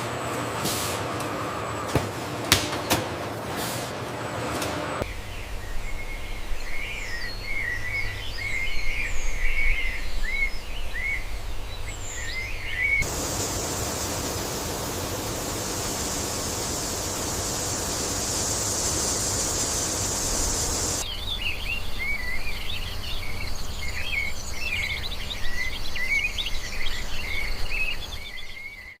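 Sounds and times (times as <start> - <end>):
birds chirping: 5.0 - 28.9
low steady rumble: 13.0 - 21.0
steady high hiss: 13.0 - 21.1.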